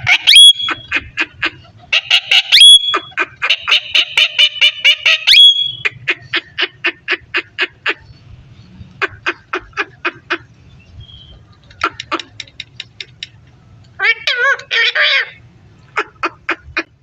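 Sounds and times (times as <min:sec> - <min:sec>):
parakeet squawking: 0:00.0 - 0:08.2, 0:14.0 - 0:15.4
parakeet chatter: 0:11.1 - 0:15.4.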